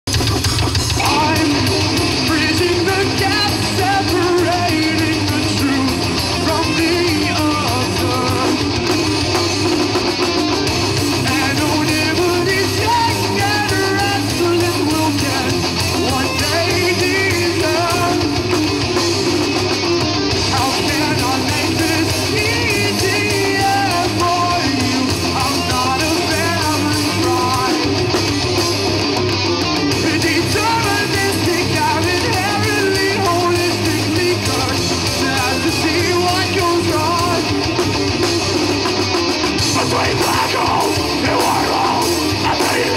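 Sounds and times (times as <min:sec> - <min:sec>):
rock band playing live: 0:00.0 - 0:42.9
electric guitars: 0:00.1 - 0:42.9
person singing: 0:01.0 - 0:09.0, 0:11.1 - 0:18.5, 0:20.4 - 0:28.0, 0:29.9 - 0:37.8, 0:39.6 - 0:42.9.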